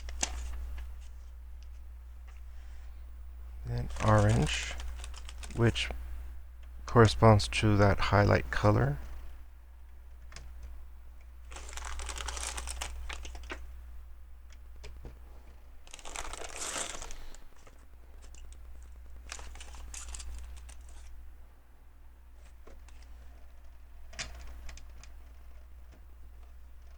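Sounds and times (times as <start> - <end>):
hands rummaging plastic pieces: 3.8 - 5.6, 11.5 - 13.4, 15.9 - 17.4.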